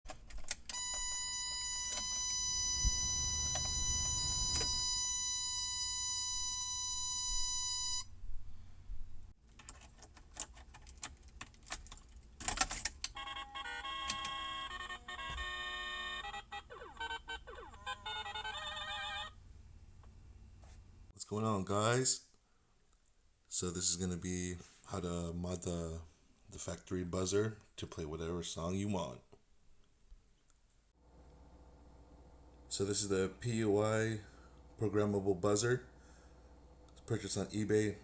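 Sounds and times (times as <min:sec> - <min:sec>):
buzzer steady high tone: 0:00.7 - 0:08.1, 0:13.2 - 0:19.4
piezo buzzer beeping melody: 0:00.8 - 0:08.1, 0:13.2 - 0:19.4.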